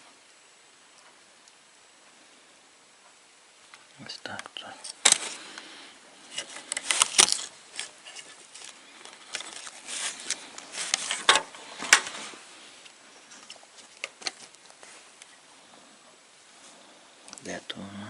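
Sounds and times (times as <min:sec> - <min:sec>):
plastic parts clicking: 0:06.3 - 0:12.1.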